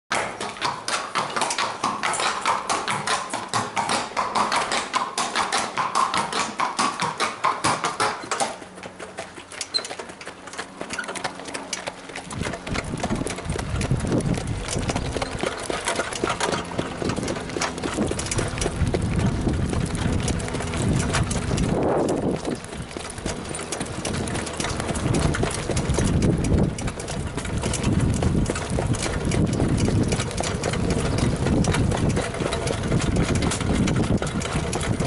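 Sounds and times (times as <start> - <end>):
horse hooves clip-clopping: 0.1 - 35.0
wind buffeting microphone: 12.2 - 35.0.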